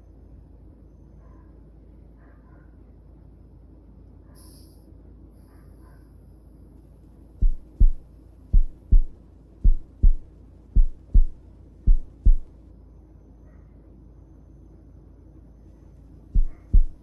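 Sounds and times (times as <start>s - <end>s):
heartbeat thumps: 7.4s - 12.5s, 16.4s - 17.0s.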